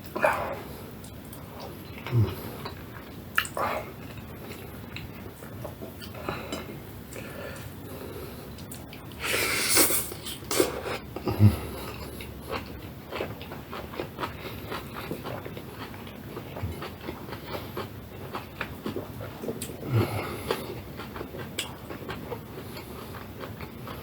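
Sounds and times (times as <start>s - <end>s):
wet chewing: 8.5s - 24.0s.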